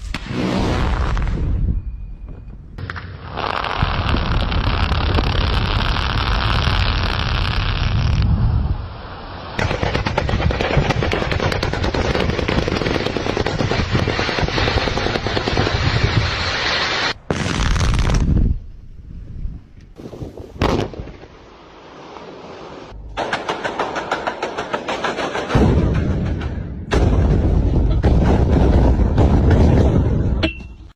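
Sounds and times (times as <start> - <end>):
rapid crackle of blasting bangs: 9.6 - 18.4, 23.2 - 30.4
loud separate bangs: 23.2 - 30.4.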